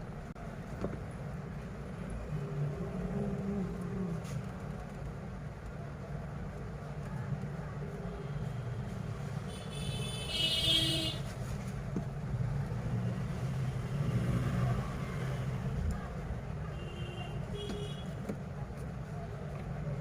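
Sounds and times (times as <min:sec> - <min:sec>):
road traffic rumble: 0:00.0 - 0:20.0.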